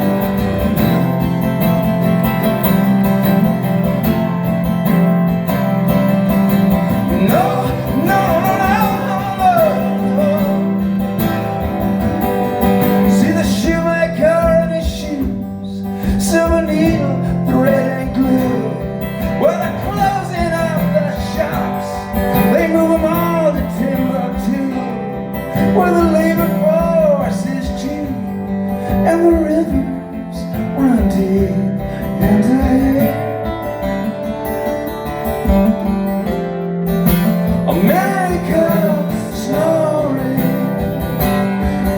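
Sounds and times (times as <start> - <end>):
strummed acoustic guitar: 0.0 - 41.9
man singing: 6.9 - 11.8, 12.8 - 33.7, 37.5 - 41.9.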